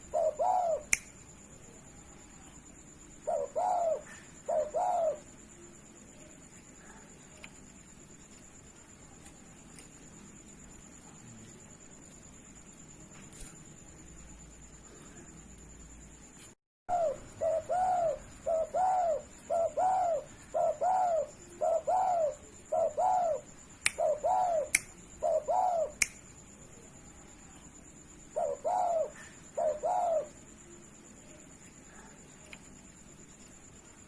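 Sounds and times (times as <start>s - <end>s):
dove cooing: 0.0s - 0.9s, 3.2s - 5.4s, 16.9s - 26.0s, 28.3s - 30.4s
faint high whine: 0.0s - 34.0s
sharp clicks: 0.9s - 1.2s, 24.7s - 25.0s, 26.0s - 26.2s.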